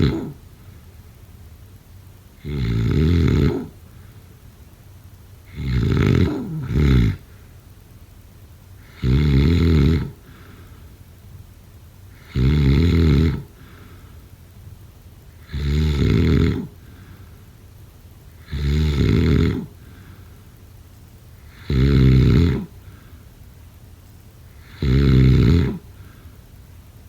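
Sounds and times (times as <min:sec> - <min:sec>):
person snoring: 0:00.0 - 0:00.4, 0:02.4 - 0:03.8, 0:05.5 - 0:07.3, 0:08.8 - 0:10.7, 0:12.1 - 0:14.0, 0:15.4 - 0:17.0, 0:18.4 - 0:20.2, 0:21.4 - 0:22.8, 0:24.6 - 0:26.2
quiet breathing: 0:00.0 - 0:02.5, 0:03.2 - 0:27.0.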